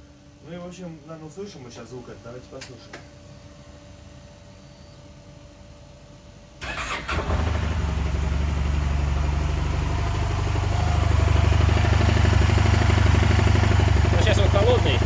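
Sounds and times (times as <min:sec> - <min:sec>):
electric starter: 0:06.6 - 0:07.8
scooter engine idling with knock: 0:10.6 - 0:15.0.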